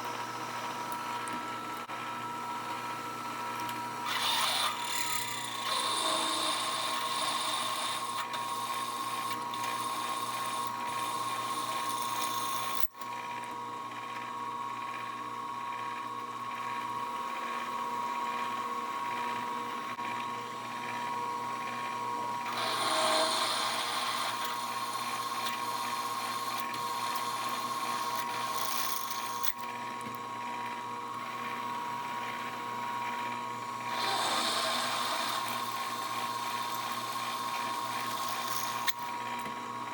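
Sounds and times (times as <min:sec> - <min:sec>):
milling machine spindle whine: 0:00.0 - 0:13.2, 0:20.0 - 0:39.9
drill cutting metal: 0:04.0 - 0:13.0, 0:22.4 - 0:29.7, 0:33.8 - 0:39.2.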